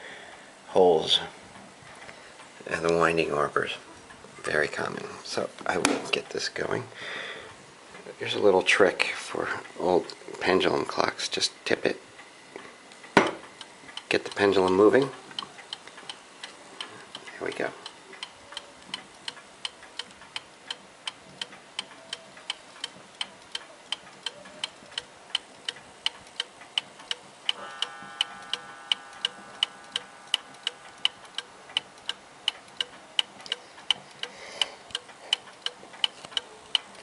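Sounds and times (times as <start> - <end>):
mantel clock ticking: 13.4 - 37.0.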